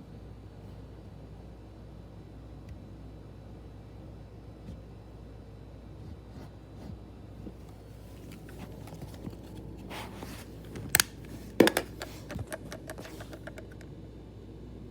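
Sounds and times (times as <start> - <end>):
cooling fan humming: 5.2 - 14.9.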